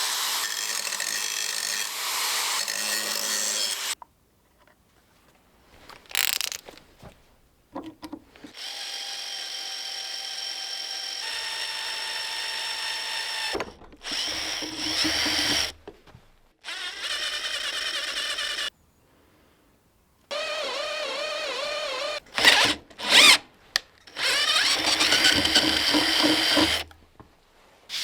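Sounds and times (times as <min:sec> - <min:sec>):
power drill whining: 0:08.5 - 0:15.8, 0:16.6 - 0:18.7, 0:20.3 - 0:23.4, 0:24.1 - 0:26.9.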